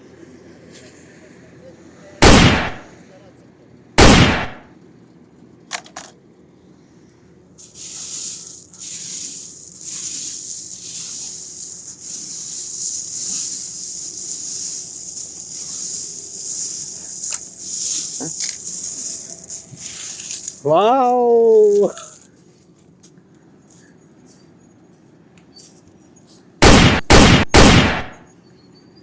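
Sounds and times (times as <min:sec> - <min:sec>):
sharp bang: 0:02.2 - 0:02.9, 0:04.0 - 0:04.7, 0:26.6 - 0:28.2
pebbles scraping and rustling: 0:07.6 - 0:26.5.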